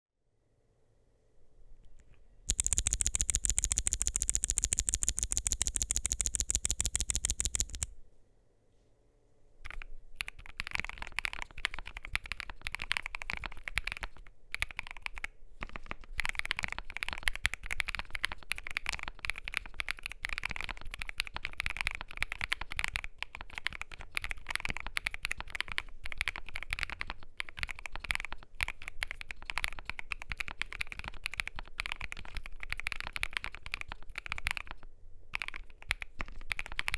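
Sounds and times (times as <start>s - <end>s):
fast bright key clatter: 2.5s - 7.9s
mechanical keyboard typing: 2.5s - 7.9s, 9.7s - 34.8s, 35.4s - 36.9s.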